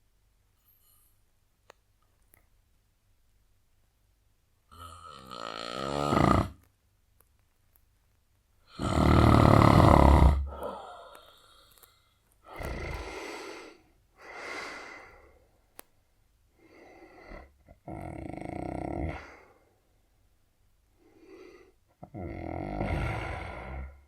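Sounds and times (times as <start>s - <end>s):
man snoring: 4.7s - 6.6s, 8.7s - 11.2s, 12.5s - 13.7s, 17.0s - 19.4s, 22.0s - 24.0s.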